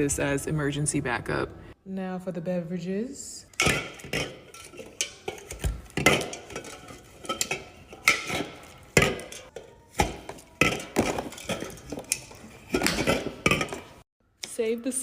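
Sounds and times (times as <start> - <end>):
drink containers knocking and clinking: 3.6 - 14.0.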